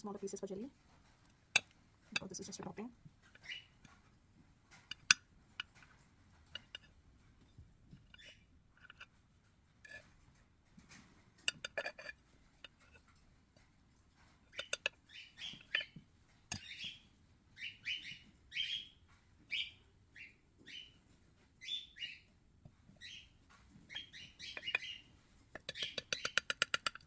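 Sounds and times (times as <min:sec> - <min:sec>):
bird chirping: 0:03.2 - 0:04.0, 0:08.1 - 0:08.5, 0:14.5 - 0:26.9.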